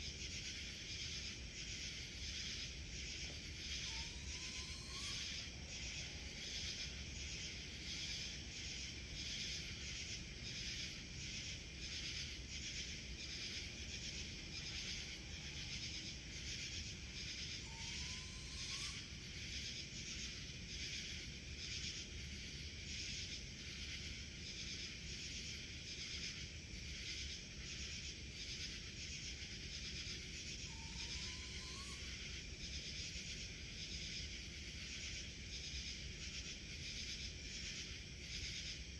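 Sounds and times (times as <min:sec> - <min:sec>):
chorus of insect calls: 0:00.0 - 0:38.9.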